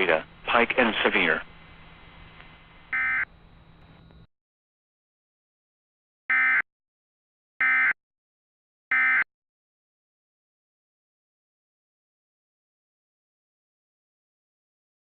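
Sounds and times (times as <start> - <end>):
digital data tone bursts: 2.9 - 3.3.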